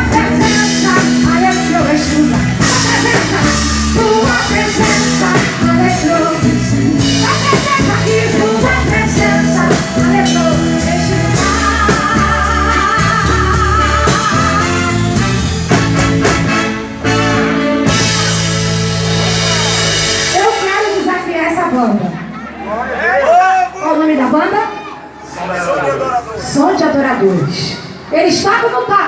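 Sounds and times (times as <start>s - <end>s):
person singing with vibrato: 0.0s - 15.3s
bass line: 0.0s - 21.9s
drum strikes: 15.2s - 21.7s.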